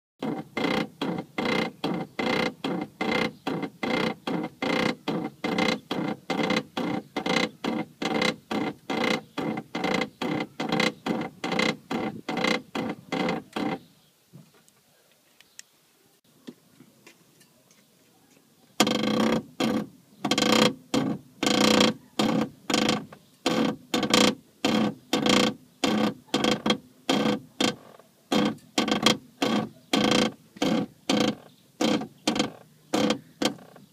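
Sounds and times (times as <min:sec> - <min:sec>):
steering creaking groan: 0:00.2 - 0:13.9, 0:18.8 - 0:33.9.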